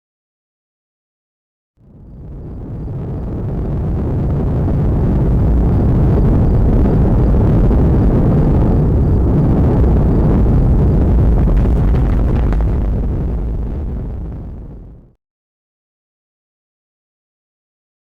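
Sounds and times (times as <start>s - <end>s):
deep rumble of volcano erupting: 1.8s - 15.2s.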